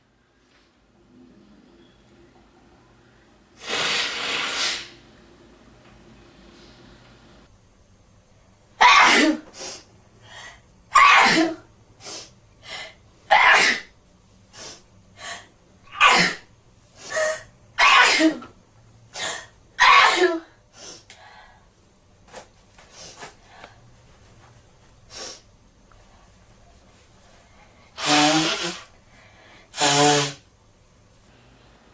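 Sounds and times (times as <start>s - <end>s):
person sneezing: 8.8s - 9.8s, 11.0s - 11.6s.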